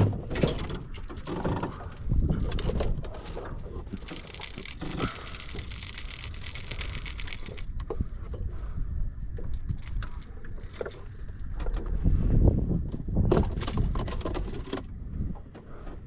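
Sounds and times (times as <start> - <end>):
knocks and clatter: 0.0 - 5.2, 13.2 - 14.9
water sloshing and splashing: 2.6 - 8.0.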